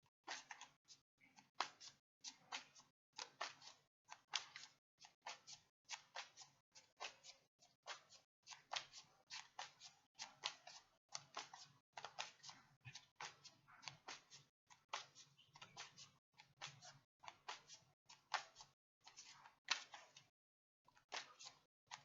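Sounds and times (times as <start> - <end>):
cards being shuffled: 0.2 - 0.7, 1.4 - 20.2, 21.0 - 22.0.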